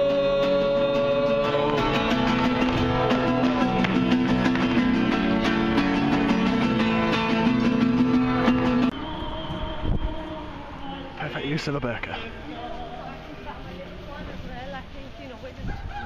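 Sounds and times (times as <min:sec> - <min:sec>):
plucked guitar music: 0:00.0 - 0:09.0.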